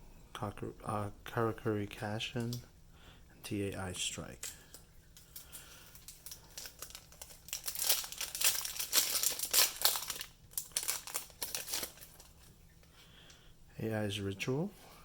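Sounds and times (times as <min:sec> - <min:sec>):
foil wrapper crinkling and tearing: 0:05.3 - 0:12.5.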